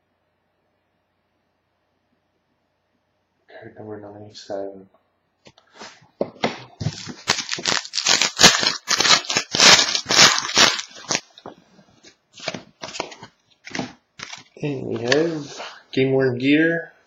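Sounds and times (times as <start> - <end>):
trading card packaging crinkling: 6.4 - 15.8.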